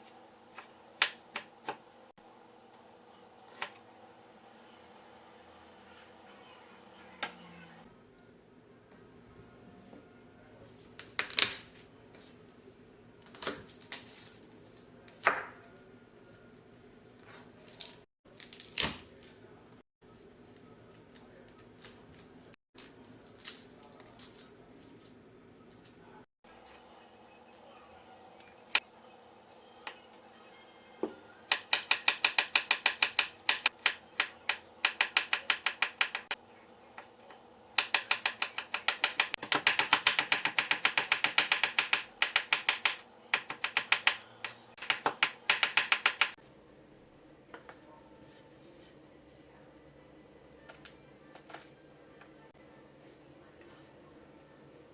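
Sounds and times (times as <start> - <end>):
knife chopping on cutting board: 31.5 - 36.3
knife tapping: 31.5 - 36.3, 37.8 - 46.4.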